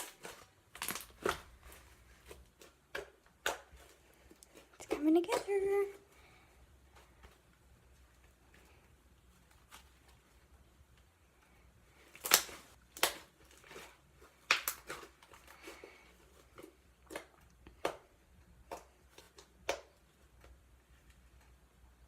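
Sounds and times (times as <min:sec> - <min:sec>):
slime popping and squelching: 0:00.0 - 0:05.6, 0:12.0 - 0:15.7.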